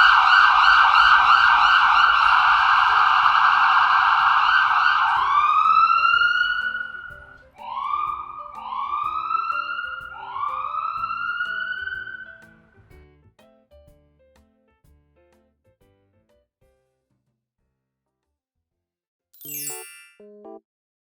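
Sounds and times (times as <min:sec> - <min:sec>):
soft background music: 0:03.2 - 0:16.4.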